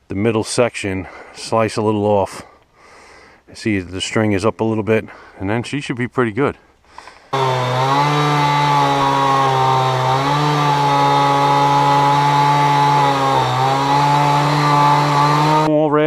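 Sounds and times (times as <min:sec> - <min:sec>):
chainsaw running at high revs: 0:07.3 - 0:15.7.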